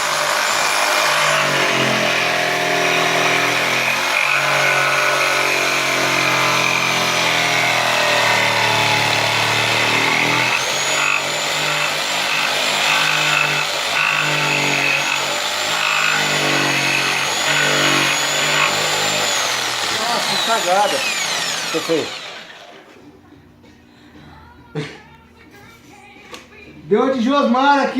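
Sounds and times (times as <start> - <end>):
power tool motor running: 0.0 - 22.8.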